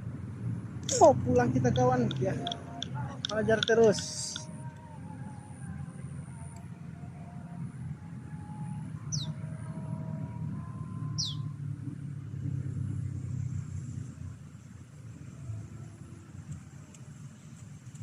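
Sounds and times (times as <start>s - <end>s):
low steady rumble: 0.0s - 18.0s
high-pitched bird chirps: 1.7s - 4.4s, 9.1s - 9.4s, 11.2s - 11.4s.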